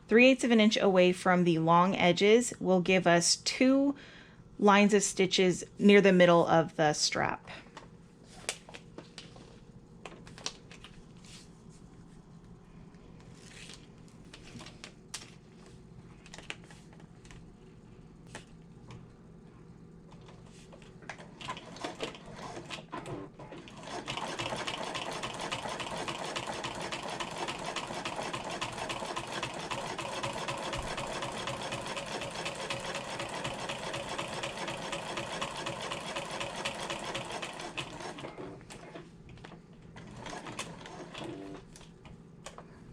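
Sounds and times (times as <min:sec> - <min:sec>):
sewing machine stitching: 0:21.3 - 0:39.0, 0:40.0 - 0:41.6.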